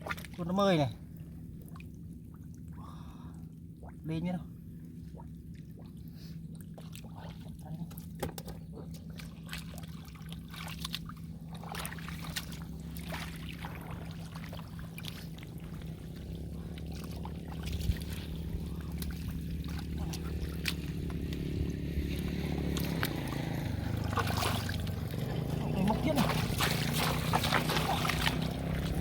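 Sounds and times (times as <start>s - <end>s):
steady low hum: 0.0s - 29.0s
hands splashing in muddy water: 8.9s - 29.0s
water trickling: 9.7s - 29.0s.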